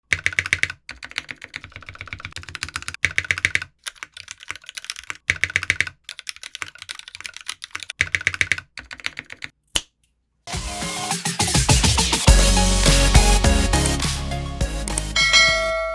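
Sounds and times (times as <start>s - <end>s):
mechanical keyboard typing: 0.0s - 9.6s
music: 10.5s - 15.9s.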